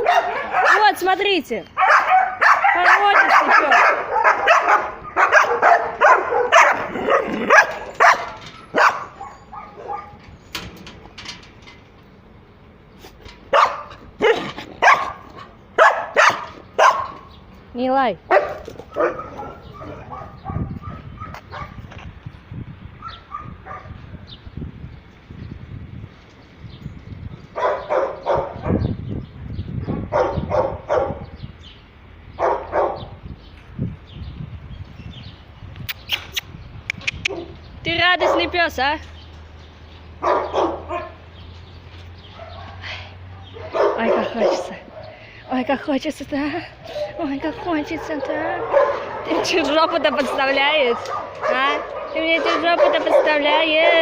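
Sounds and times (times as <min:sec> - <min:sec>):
dog barking: 0:00.0 - 0:01.0, 0:01.8 - 0:10.2, 0:13.5 - 0:15.2, 0:15.8 - 0:17.3, 0:18.3 - 0:21.8, 0:23.0 - 0:24.0, 0:27.6 - 0:28.9, 0:30.1 - 0:31.2, 0:32.4 - 0:33.1, 0:38.2 - 0:38.5, 0:40.2 - 0:41.2, 0:42.3 - 0:42.8, 0:43.4 - 0:45.2, 0:47.0 - 0:54.0.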